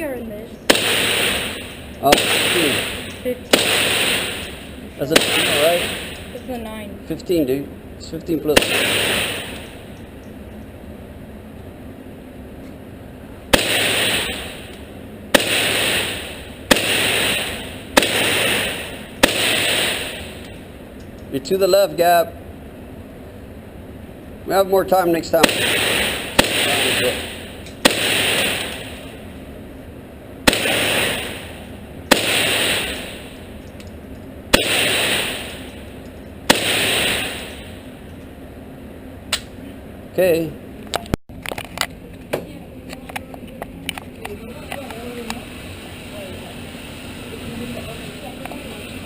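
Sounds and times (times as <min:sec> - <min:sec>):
handgun shots echoing: 0:00.7 - 0:06.3, 0:08.6 - 0:09.7, 0:13.5 - 0:14.8, 0:15.4 - 0:20.6, 0:25.4 - 0:29.1, 0:30.5 - 0:31.5, 0:32.1 - 0:33.2, 0:34.5 - 0:35.8, 0:36.5 - 0:37.7.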